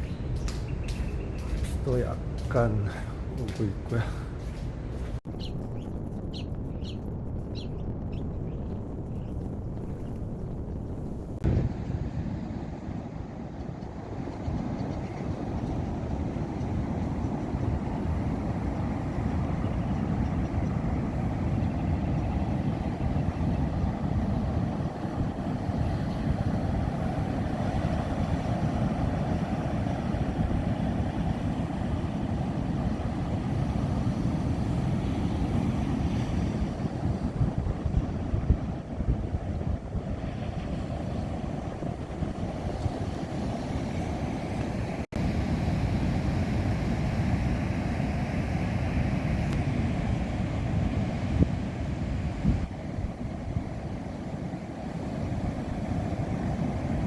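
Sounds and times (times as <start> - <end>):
wind buffeting microphone: 0.0 - 57.0
ocean surf on beach: 11.4 - 57.0.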